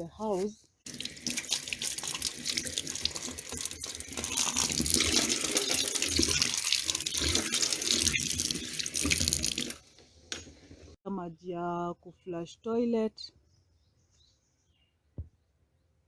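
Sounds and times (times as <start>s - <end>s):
tap water running and splashing: 0.8s - 9.8s.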